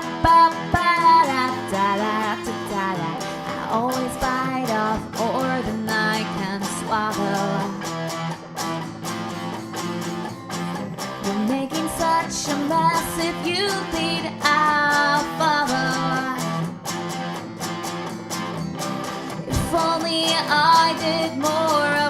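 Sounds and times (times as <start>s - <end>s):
acoustic guitar accompaniment: 0.0s - 22.0s
picked lead guitar melody: 0.0s - 22.0s.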